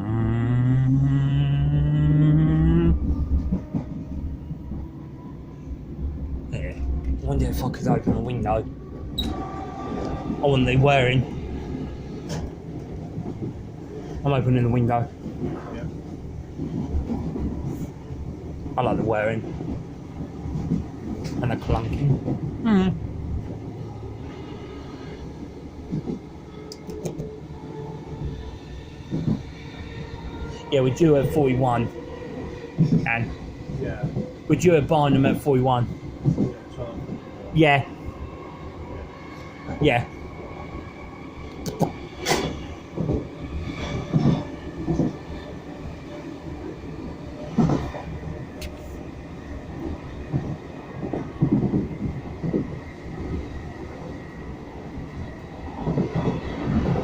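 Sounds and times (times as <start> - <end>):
train wheels rumbling on track: 0.1 - 57.0
train clunks: 6.8 - 22.6, 25.9 - 27.4, 41.5 - 45.6.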